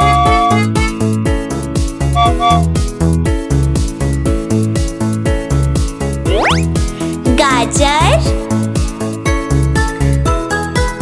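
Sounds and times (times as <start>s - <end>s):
upbeat instrumental children's music: 0.0s - 2.7s, 6.2s - 11.0s.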